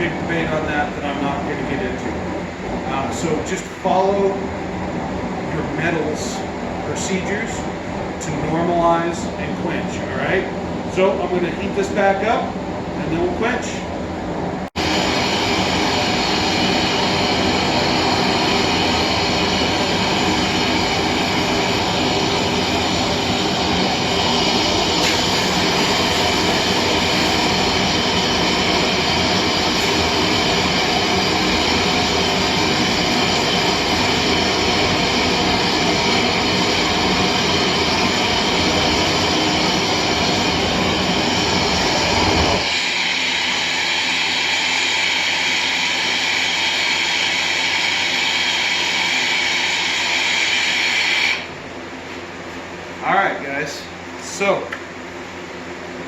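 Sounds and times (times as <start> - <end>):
forge rushing noise: 14.8 - 51.5.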